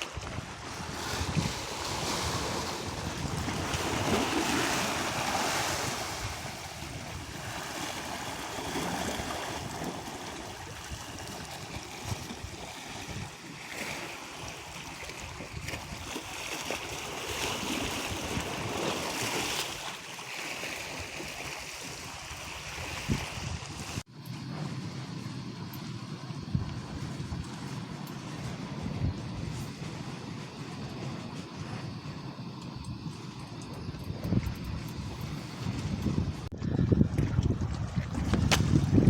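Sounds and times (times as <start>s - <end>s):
wind buffeting microphone: 0.0s - 19.8s, 20.9s - 39.0s
sea waves washing against rocks: 0.0s - 24.1s.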